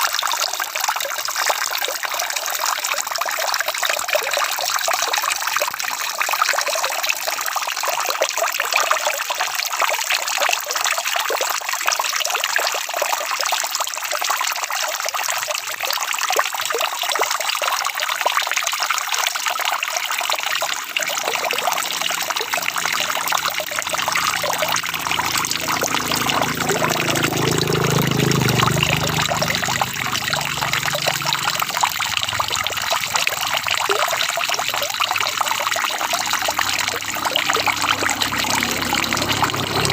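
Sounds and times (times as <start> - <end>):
heavy rain pattering: 20.8 - 39.9.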